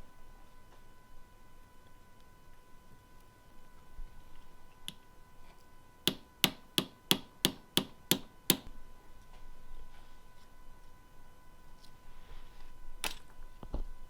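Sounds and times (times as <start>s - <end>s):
hammer strikes: 6.1s - 8.7s.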